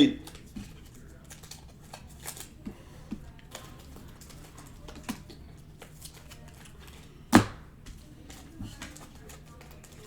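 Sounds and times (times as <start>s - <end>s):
sharp loud knock: 7.4s - 7.7s.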